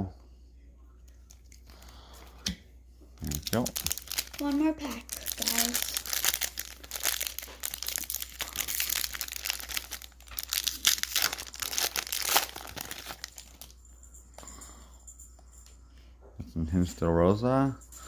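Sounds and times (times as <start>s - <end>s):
wrapper tearing and crinkling: 3.2s - 13.7s.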